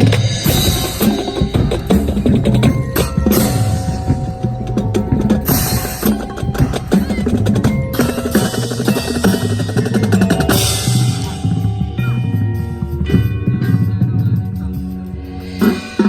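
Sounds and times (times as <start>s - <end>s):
cymbal crashes: 0.0s - 13.2s
snare and bass drum strokes: 0.0s - 14.8s
marching band music: 0.0s - 16.0s.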